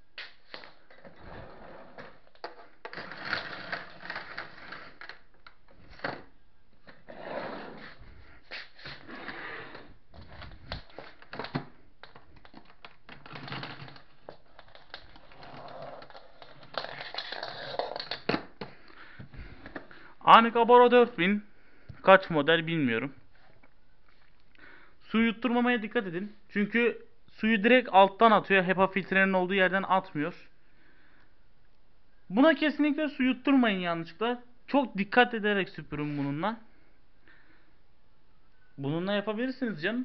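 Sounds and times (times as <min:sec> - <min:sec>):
rustling of objects handled: 0:10.1 - 0:20.0.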